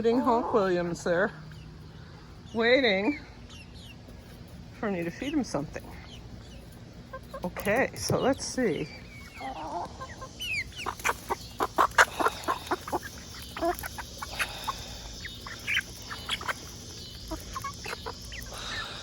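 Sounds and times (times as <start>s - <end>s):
chickens clucking and squawking: 0.0s - 19.0s.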